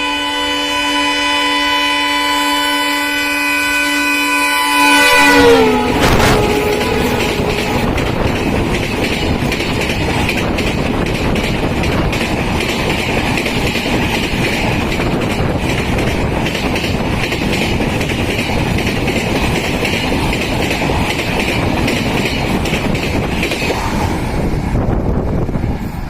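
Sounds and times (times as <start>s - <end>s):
train horn blast: 0.0s - 8.4s
train passing at full speed: 0.0s - 26.0s
wheels clacking over rail joints: 5.4s - 24.8s.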